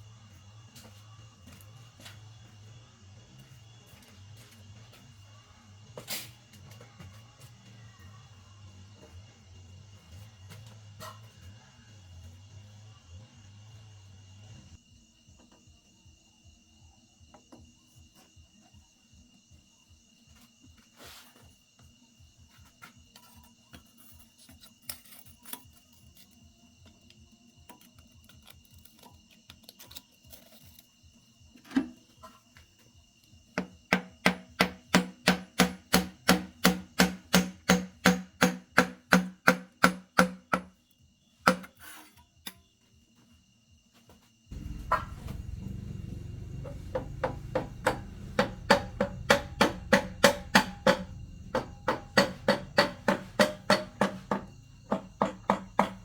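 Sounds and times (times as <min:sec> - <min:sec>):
single knocks: 0:44.5 - 0:56.0.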